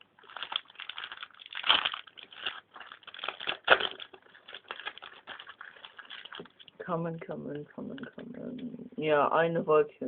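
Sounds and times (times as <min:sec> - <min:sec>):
foil wrapper crinkling: 0:00.1 - 0:06.8.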